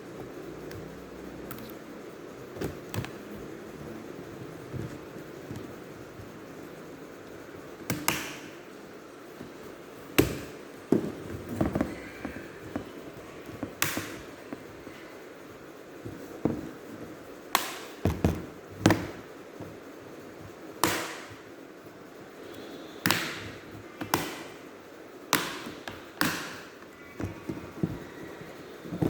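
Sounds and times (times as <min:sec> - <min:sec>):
laptop parts clicking and knocking: 0:10.2 - 0:14.3, 0:25.3 - 0:28.1.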